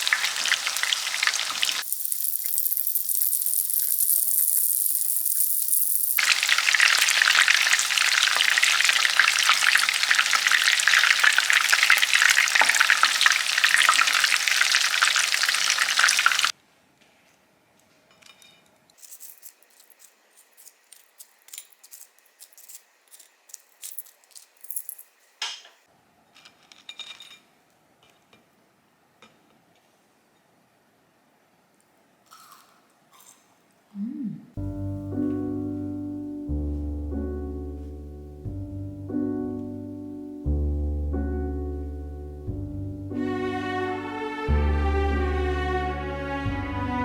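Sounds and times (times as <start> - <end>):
food sizzling in a hot pan: 0.0 - 16.5.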